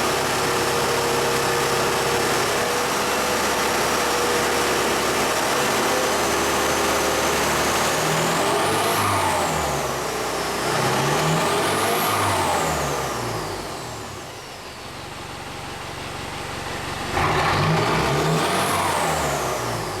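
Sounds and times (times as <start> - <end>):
diesel engine revving: 0.0 - 14.3, 17.0 - 20.0.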